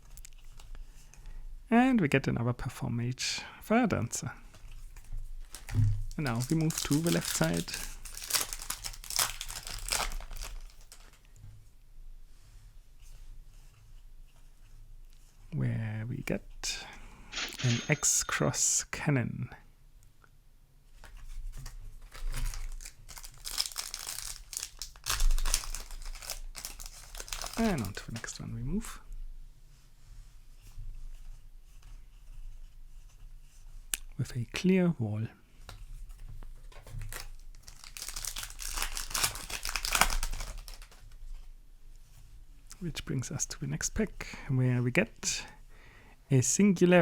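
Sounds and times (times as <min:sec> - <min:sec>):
foil wrapper crinkling: 0:05.4 - 0:11.2, 0:22.0 - 0:28.4, 0:36.9 - 0:41.2.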